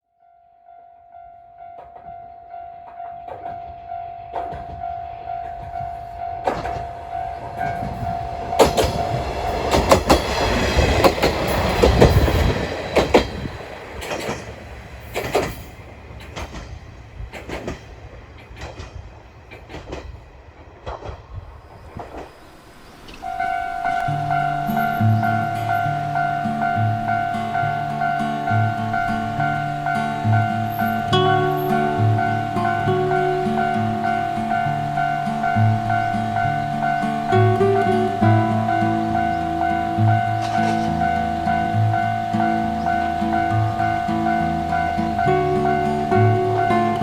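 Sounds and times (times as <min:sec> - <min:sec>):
steady high tone: 0:00.2 - 0:12.8, 0:22.5 - 0:47.0
train passing: 0:00.2 - 0:47.0
wheels clacking over rail joints: 0:01.6 - 0:47.0.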